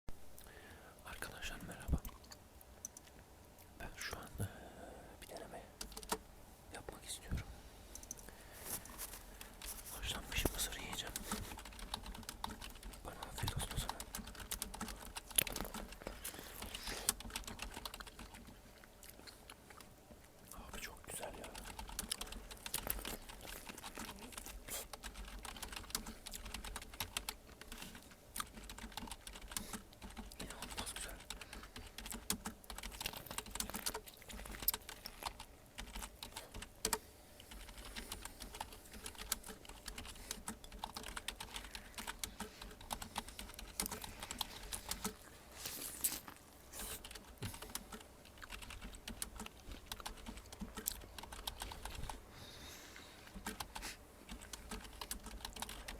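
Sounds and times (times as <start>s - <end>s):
typing on computer keyboard: 5.8s - 6.2s, 10.4s - 18.6s, 21.2s - 45.2s, 46.8s - 52.2s, 53.3s - 55.9s.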